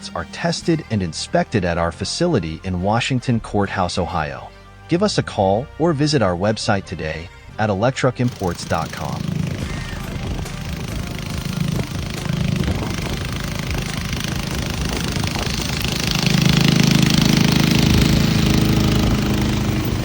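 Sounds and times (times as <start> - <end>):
small gasoline engine running: 8.2 - 20.0.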